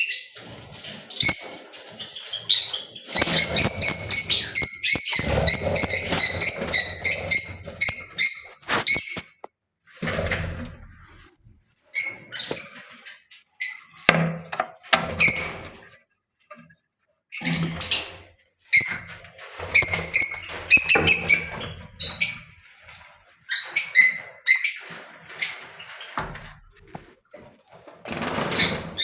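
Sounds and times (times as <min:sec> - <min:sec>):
lovebirds chirping: 0:01.2 - 0:09.2.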